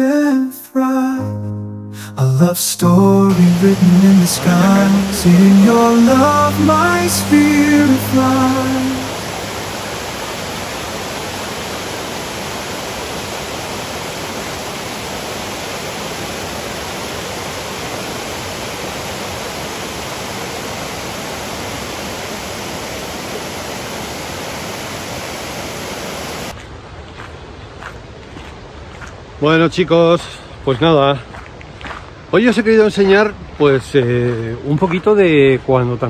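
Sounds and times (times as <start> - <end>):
stream rushing: 3.3 - 26.6.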